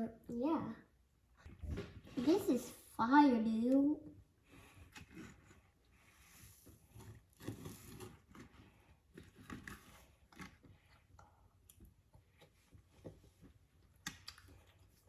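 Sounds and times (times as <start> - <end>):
person chewing food: 6.8 - 15.0.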